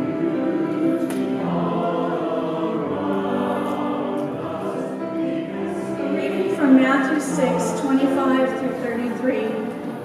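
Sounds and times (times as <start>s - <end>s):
choir singing sustained chords: 0.0s - 10.0s.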